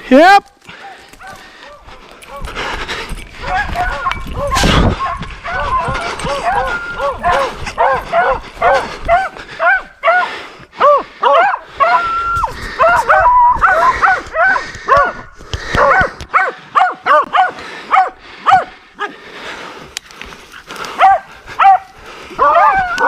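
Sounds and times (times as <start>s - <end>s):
hound bawling: 3.4s - 12.0s
hounds barking: 3.4s - 12.1s, 12.8s - 18.8s, 20.8s - 23.0s.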